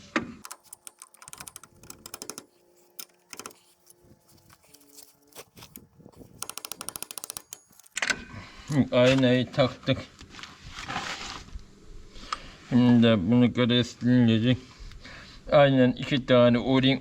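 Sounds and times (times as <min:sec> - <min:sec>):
light metallic clicks and rattling: 0:00.4 - 0:08.2.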